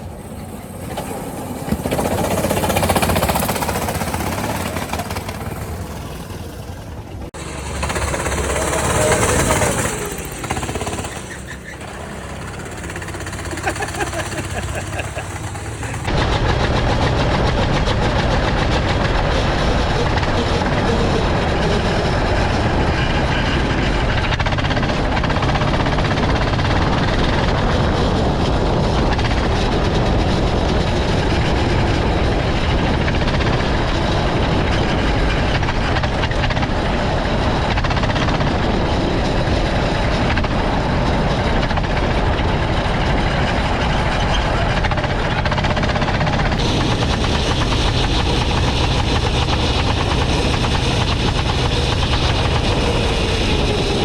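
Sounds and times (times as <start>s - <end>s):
go-kart engines running: 0.0s - 54.0s.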